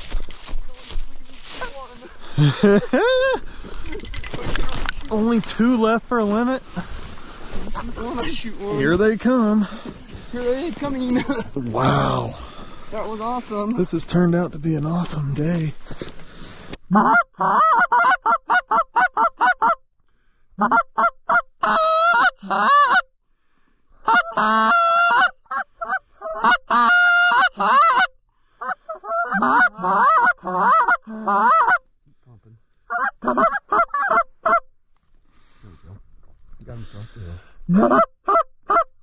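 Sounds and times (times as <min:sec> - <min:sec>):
goose call honks and clucks: 0:16.9 - 0:19.8, 0:20.6 - 0:23.1, 0:24.0 - 0:31.9, 0:32.9 - 0:34.7, 0:37.7 - 0:39.0.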